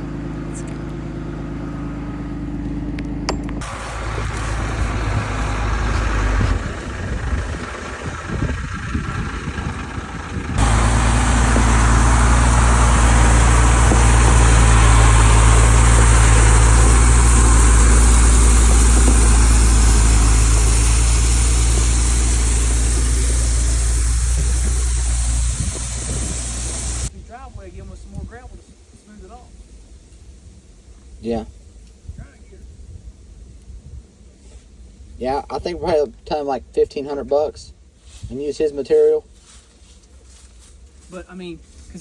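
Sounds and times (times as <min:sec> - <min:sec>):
vehicle engine running: 0:00.0 - 0:27.1
rushing noise: 0:03.6 - 0:27.1.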